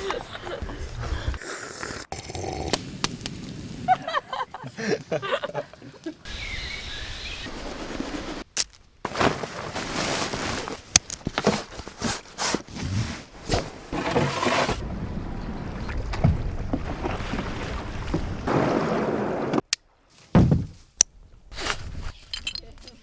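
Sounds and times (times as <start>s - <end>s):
thuds and knocks: 20.3s - 20.8s.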